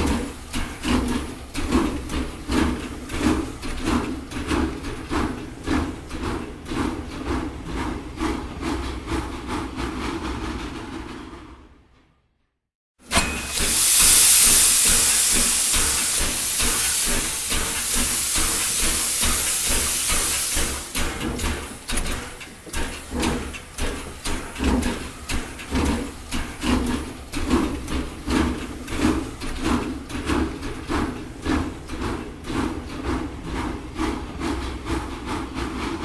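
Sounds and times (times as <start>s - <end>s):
locomotive exhaust chuffs: 0.0s - 10.8s, 13.0s - 36.0s
loud steam hiss: 13.1s - 24.6s.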